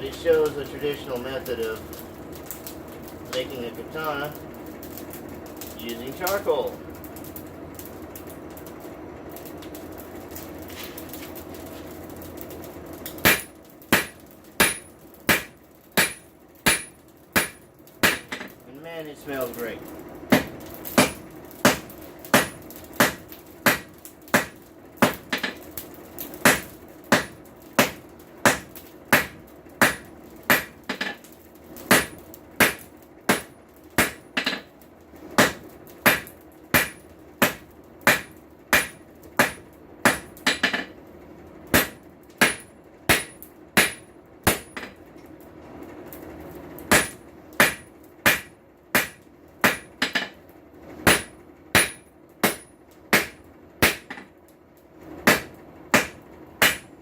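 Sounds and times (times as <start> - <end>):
steady low hum: 0.0 - 57.0
hammer striking hot steel: 12.4 - 41.0, 41.7 - 45.0, 46.8 - 50.4, 51.0 - 54.4, 55.2 - 57.0.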